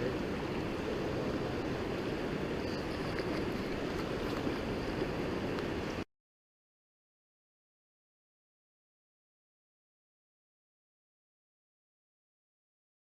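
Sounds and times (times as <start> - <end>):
river water rushing: 0.0 - 6.0.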